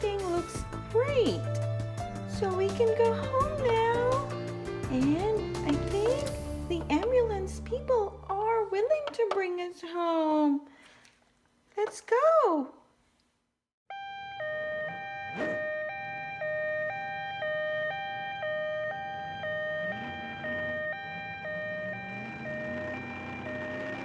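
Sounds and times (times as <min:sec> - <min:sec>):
two-tone ambulance siren: 0:13.9 - 0:24.0.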